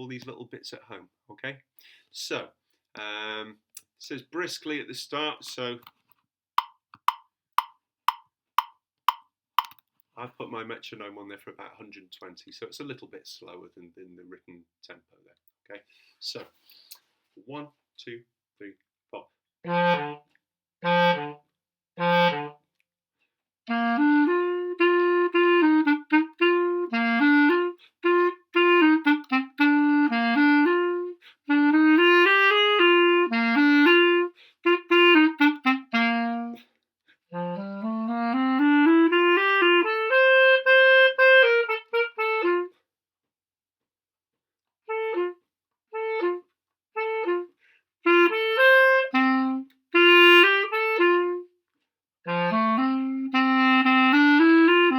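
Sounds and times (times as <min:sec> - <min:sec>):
solo clarinet playing: 0:19.6 - 0:22.6, 0:23.7 - 0:36.7, 0:37.3 - 0:42.8, 0:44.9 - 0:51.5, 0:52.2 - 0:54.9.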